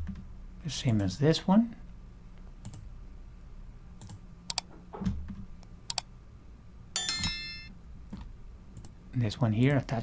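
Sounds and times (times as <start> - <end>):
faint steady hum: 0.0 - 10.0
computer mouse clicks: 2.6 - 2.9, 4.0 - 4.7, 5.3 - 6.1.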